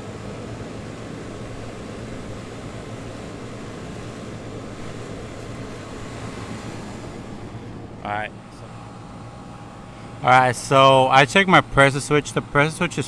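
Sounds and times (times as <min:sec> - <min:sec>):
constant low hum: 0:00.0 - 0:13.0
refrigeration fan noise: 0:00.0 - 0:13.0.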